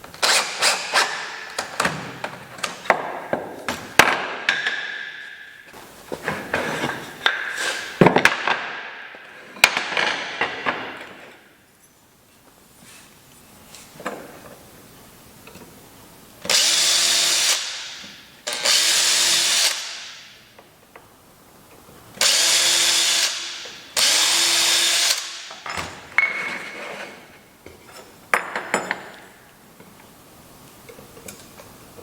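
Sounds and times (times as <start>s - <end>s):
handling noises: 0.0s - 11.4s
power drill bursts: 16.5s - 17.8s, 18.5s - 20.0s, 22.2s - 25.4s.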